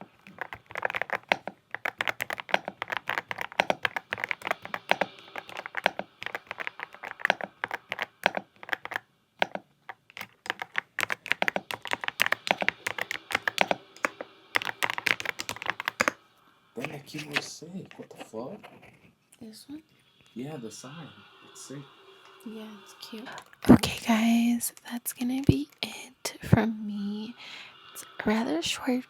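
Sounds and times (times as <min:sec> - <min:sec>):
mechanical keyboard typing: 0:00.0 - 0:16.2.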